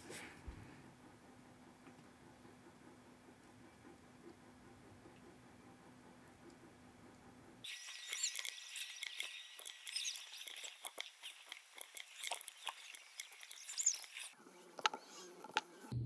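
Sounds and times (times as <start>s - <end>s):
flux sizzling and crackling: 7.7s - 15.9s.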